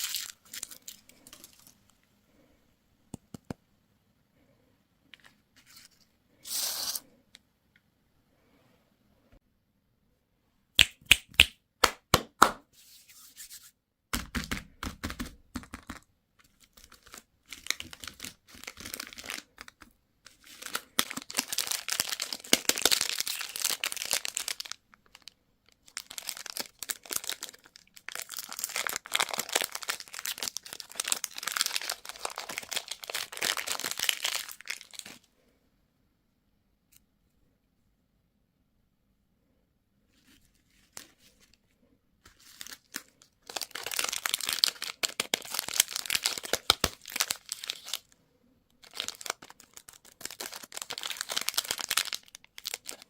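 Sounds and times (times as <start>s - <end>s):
packaging crinkling: 16.4s - 35.2s, 42.3s - 48.2s, 48.8s - 53.0s.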